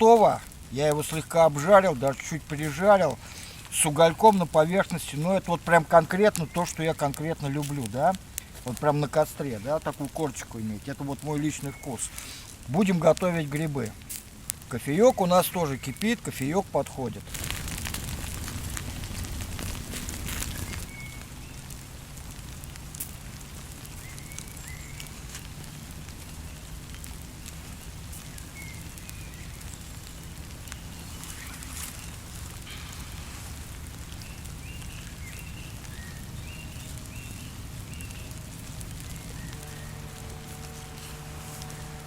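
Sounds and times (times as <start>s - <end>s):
campfire crackling: 0.0s - 42.0s
faint bird chirps: 20.4s - 21.6s, 23.9s - 25.2s.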